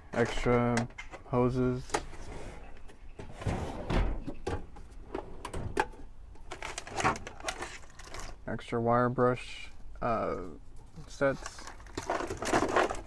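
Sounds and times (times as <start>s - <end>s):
spare parts knocking and rustling: 4.3s - 8.4s, 11.3s - 13.0s.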